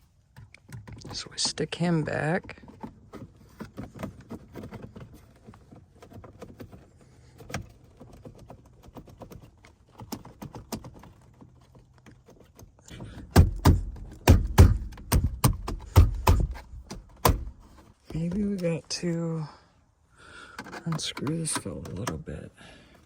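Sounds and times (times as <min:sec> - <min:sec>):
loud knocks: 0:13.3 - 0:17.6.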